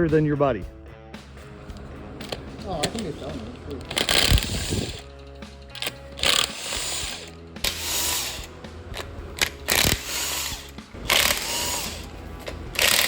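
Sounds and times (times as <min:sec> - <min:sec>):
power tool ratcheting whir: 0:03.8 - 0:13.0.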